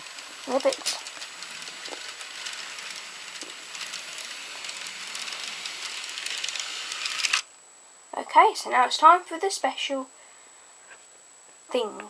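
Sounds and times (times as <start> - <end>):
toy train motor whirring: 0.0 - 7.5.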